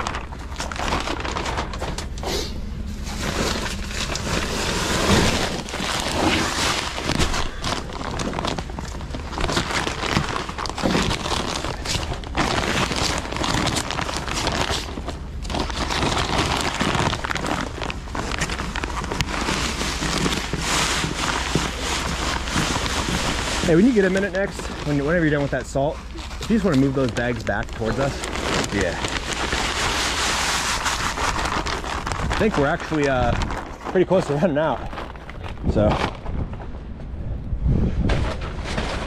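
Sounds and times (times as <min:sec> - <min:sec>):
strong wind buffeting microphone: 0:34.7 - 0:39.0.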